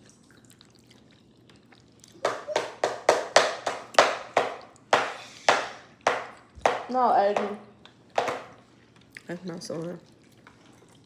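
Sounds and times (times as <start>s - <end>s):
child's hands clapping: 2.2s - 7.6s.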